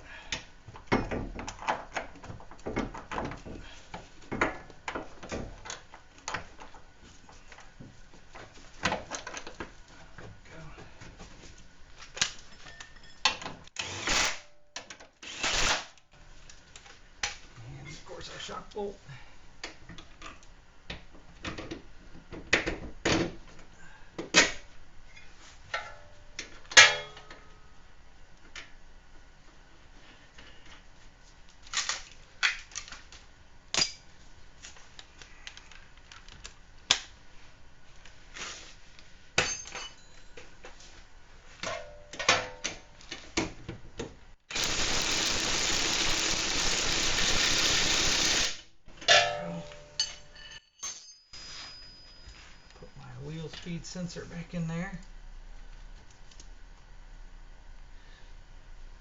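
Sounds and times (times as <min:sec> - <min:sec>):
power tool running: 0:44.5 - 0:48.6.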